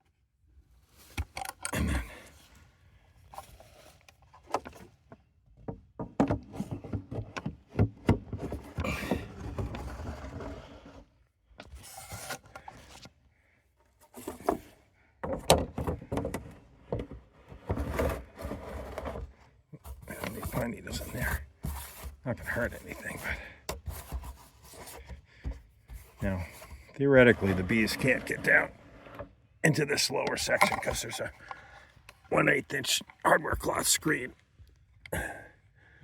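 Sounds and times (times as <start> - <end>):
debris scraped off tray: 27.2 - 29.2.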